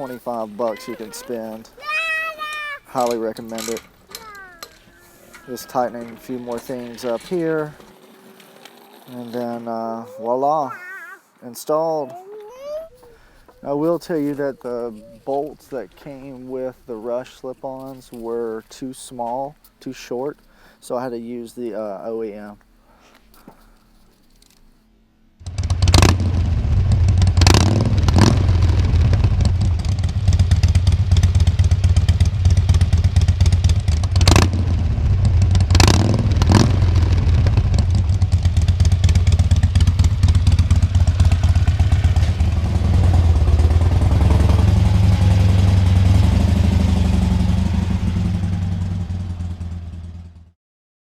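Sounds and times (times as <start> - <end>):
motorcycle engine rumble: 0.0 - 16.6, 25.4 - 50.5
exhaust blasts: 25.4 - 49.9.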